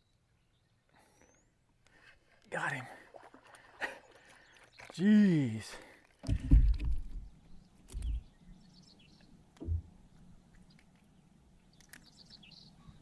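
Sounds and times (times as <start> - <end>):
dull low thumps: 9.6 - 10.0.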